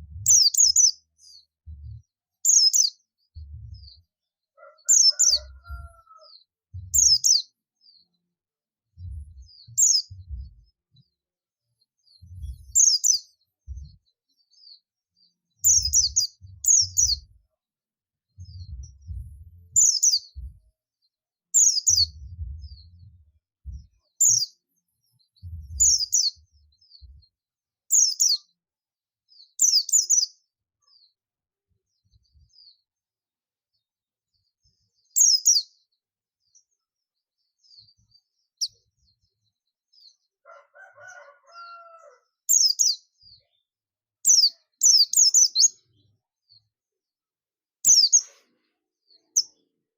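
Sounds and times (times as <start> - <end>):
low thumps: 3.4 - 4.0, 6.7 - 7.1, 9.0 - 9.5, 10.1 - 10.7, 12.2 - 12.8, 13.7 - 14.0, 18.4 - 19.8, 20.4 - 20.7, 22.0 - 24.0, 25.4 - 26.1.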